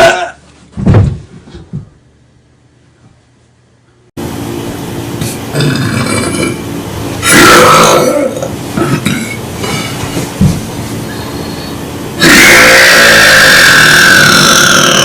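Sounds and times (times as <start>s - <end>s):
man belching: 5.5s - 6.6s, 7.2s - 9.4s, 12.2s - 15.0s.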